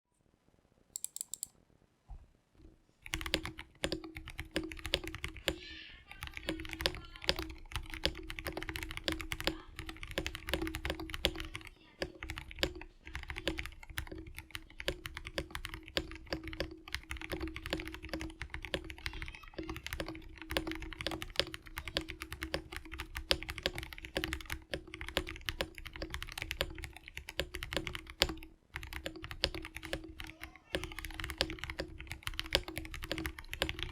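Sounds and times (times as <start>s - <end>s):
fast typing on mechanical keyboard: 1.0s - 1.5s, 3.0s - 33.9s.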